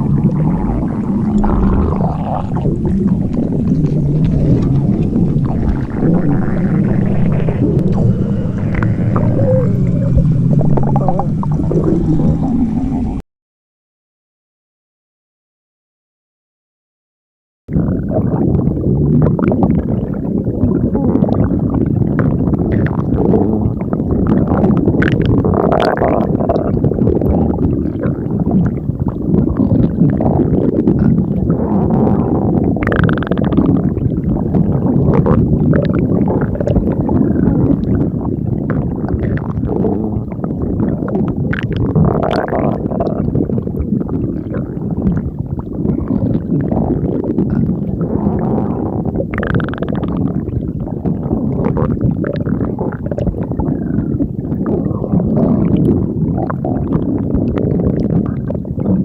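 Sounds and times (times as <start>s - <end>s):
stomach growling and gurgling: 0.0s - 13.2s, 17.7s - 59.0s.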